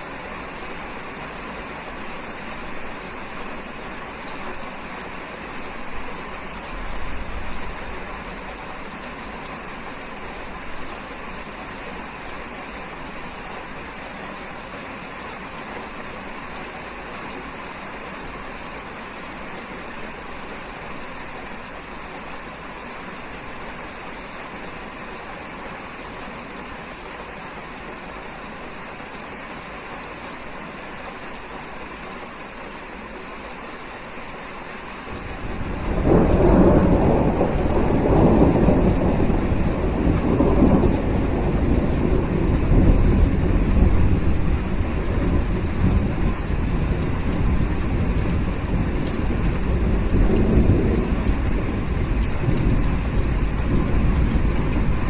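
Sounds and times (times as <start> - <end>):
steady rain: 0.0 - 55.0
rolling thunder rumble: 35.2 - 55.0.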